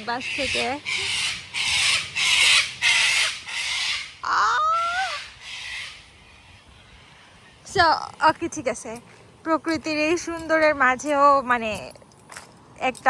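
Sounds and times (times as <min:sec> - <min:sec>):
bird harsh raspy caws: 0:00.0 - 0:08.2.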